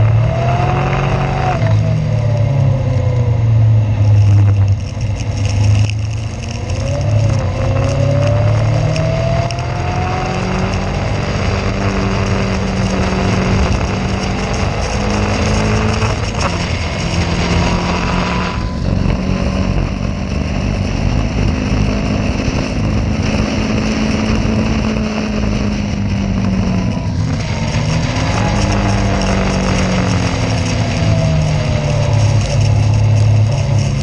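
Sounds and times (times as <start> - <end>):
race car engine running: 0.0 - 34.0
steady noisy rush: 0.0 - 34.0.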